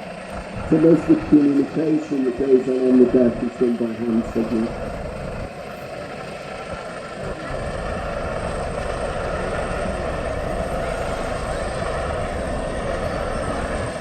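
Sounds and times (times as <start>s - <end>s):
helicopter hovering: 0.0s - 14.0s.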